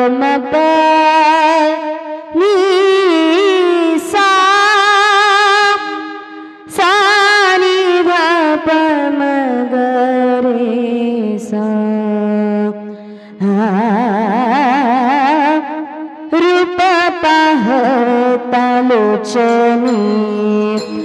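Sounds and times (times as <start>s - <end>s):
woman singing wordless held notes: 6.7s - 12.8s, 16.4s - 21.0s.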